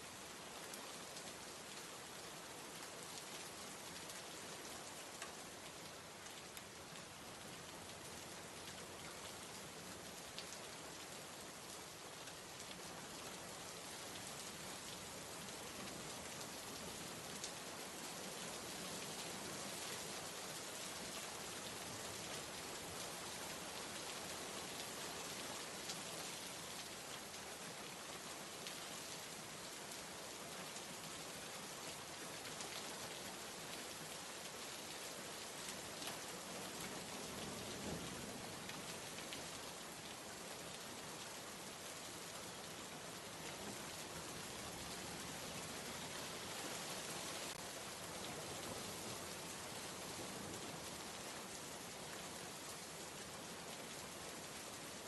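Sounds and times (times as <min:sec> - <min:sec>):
steady rain hiss: 0:00.0 - 0:55.0.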